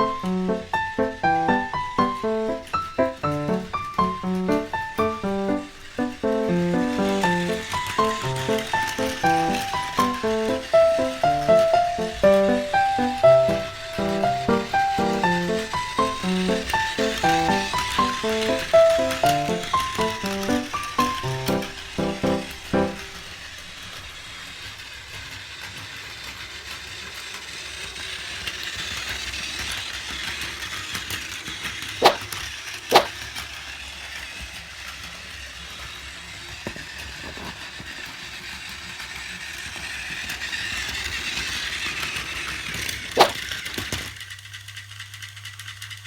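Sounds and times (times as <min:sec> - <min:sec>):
toy train whirring rattle: 0:00.0 - 0:46.0.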